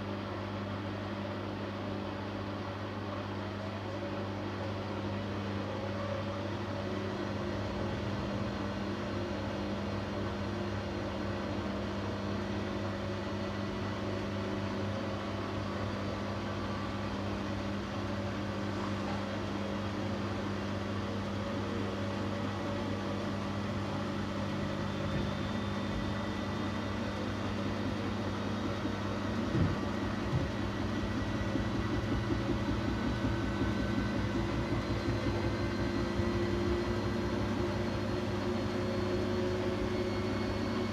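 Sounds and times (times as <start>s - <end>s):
washing machine motor hum: 0.0s - 40.9s
washing machine knocks: 28.8s - 34.4s.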